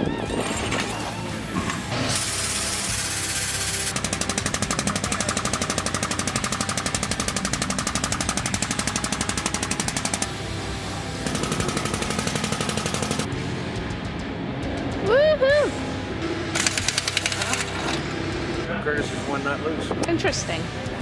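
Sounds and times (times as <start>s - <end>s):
pneumatic impact wrench hammering: 0.0s - 10.5s, 11.2s - 13.3s, 16.5s - 18.1s.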